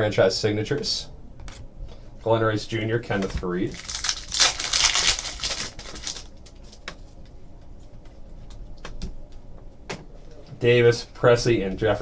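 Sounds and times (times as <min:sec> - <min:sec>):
packaging rustling: 0:03.2 - 0:07.2.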